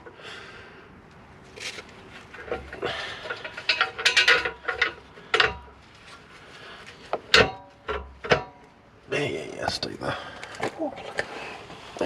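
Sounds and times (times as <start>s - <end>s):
metal parts clanking: 2.4s - 5.7s.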